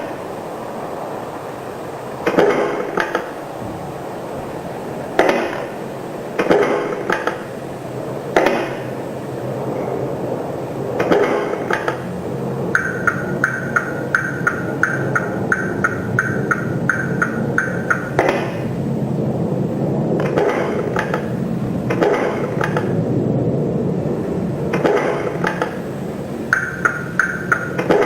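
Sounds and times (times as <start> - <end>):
truck engine running: 11.4 - 18.9, 22.4 - 27.9
reversing alarm beeping: 12.7 - 18.7, 26.4 - 27.9.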